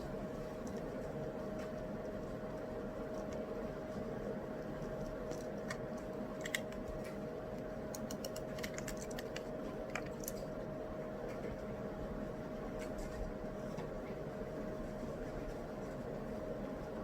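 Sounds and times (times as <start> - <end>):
steady background hum: 0.0 - 17.0
keyboard typing: 7.8 - 10.5.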